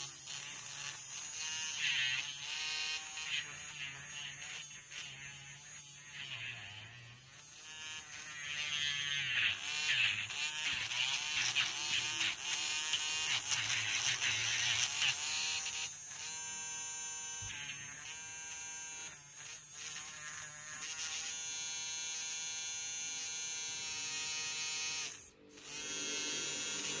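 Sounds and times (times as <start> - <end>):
electric nail drill whining: 0.0 - 27.0.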